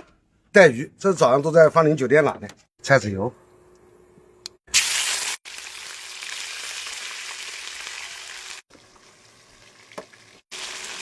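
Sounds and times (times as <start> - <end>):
food sizzling in a pan: 4.7 - 11.0.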